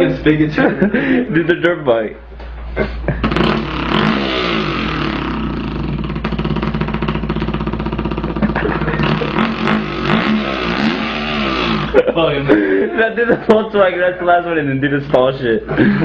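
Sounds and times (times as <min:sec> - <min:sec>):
man imitating engine with mouth: 0:02.9 - 0:12.0.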